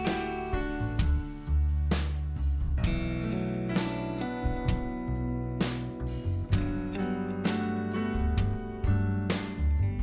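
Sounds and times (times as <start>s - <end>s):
drum hit: 0.0s - 3.2s
guitar-led instrumental music: 0.0s - 10.0s
steady bass line: 0.0s - 10.0s.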